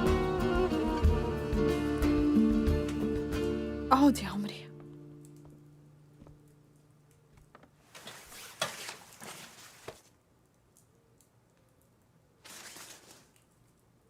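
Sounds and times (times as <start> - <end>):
faint rustling: 6.7 - 10.2.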